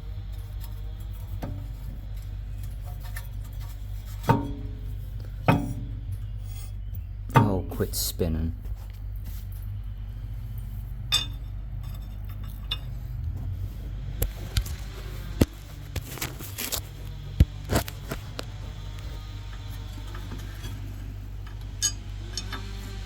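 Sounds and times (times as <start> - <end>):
steady low hum: 0.0 - 23.0
metal tools clinking and scraping: 0.3 - 8.0, 10.5 - 13.3, 20.0 - 22.7.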